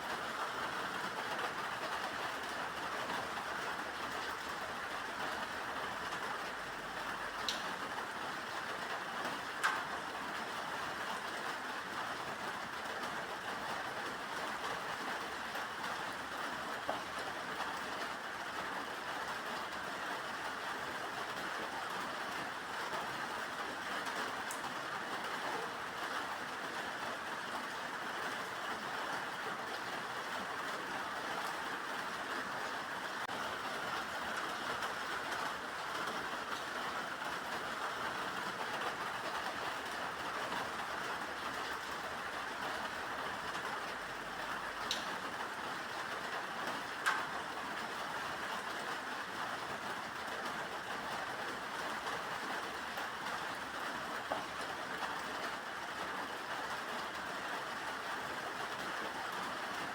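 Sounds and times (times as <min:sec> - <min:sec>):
steady rain hiss: 0:00.0 - 0:59.9
raindrop ticks: 0:07.4 - 0:07.8, 0:09.6 - 0:09.9, 0:44.5 - 0:45.5, 0:47.0 - 0:47.3.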